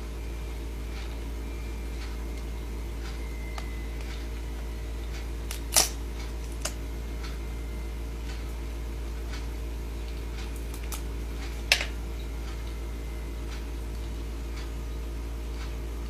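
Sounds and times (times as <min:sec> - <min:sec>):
low electrical hum: 0:00.0 - 0:16.0
crab claws clicking: 0:05.5 - 0:06.8.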